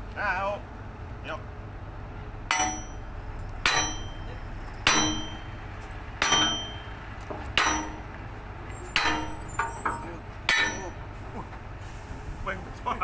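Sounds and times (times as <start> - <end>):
hammer clanging on steel pipe: 2.5 - 8.2, 8.9 - 11.1.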